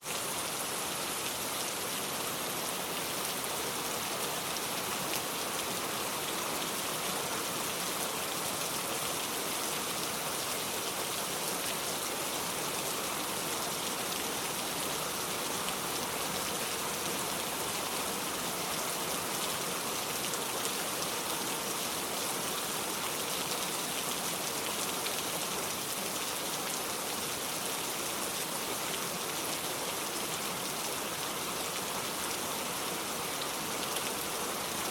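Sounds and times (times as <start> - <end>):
heavy rain falling: 0.1 - 34.9.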